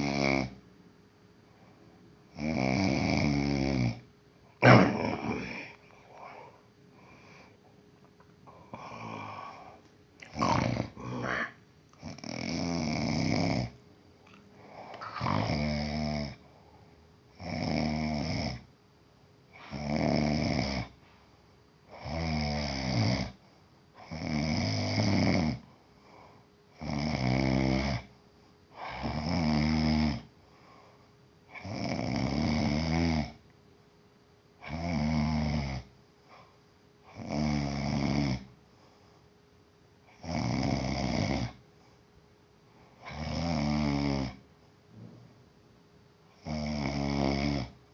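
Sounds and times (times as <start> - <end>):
quiet breaths: 1.2 - 4.6, 5.4 - 18.8, 19.4 - 33.5, 34.5 - 45.5
rattling snore: 10.2 - 13.7, 14.3 - 16.4.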